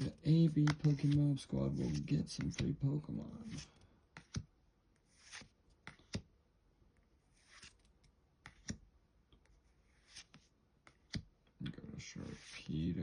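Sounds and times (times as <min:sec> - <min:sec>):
cards scraping: 0:00.0 - 0:06.3, 0:07.2 - 0:08.8, 0:09.5 - 0:11.3, 0:12.0 - 0:13.0.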